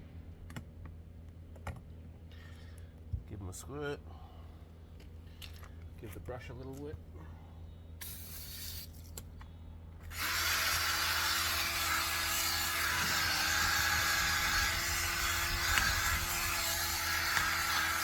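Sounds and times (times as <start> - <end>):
power drill motor hum: 10.0 - 18.0.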